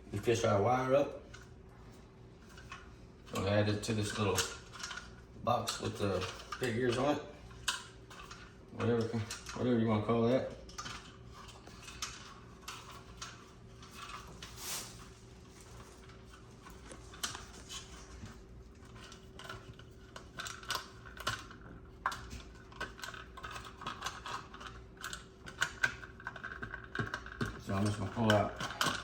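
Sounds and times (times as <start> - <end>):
cable clicks and rattles: 2.4 - 9.7, 15.7 - 29.0.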